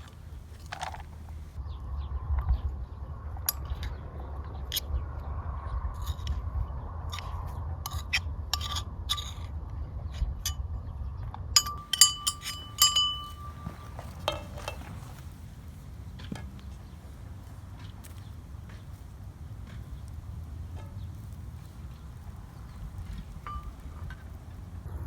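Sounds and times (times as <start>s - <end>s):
low steady rumble: 10.8s - 25.0s
kitchenware clinking: 11.7s - 15.4s, 23.4s - 24.2s.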